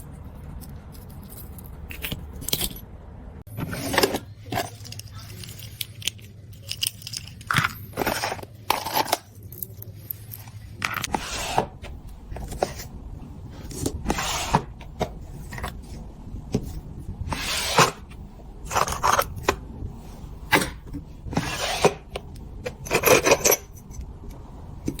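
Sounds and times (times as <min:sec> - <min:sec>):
metal pieces clinking and scraping: 0:00.4 - 0:02.8, 0:03.6 - 0:11.2, 0:22.6 - 0:24.0.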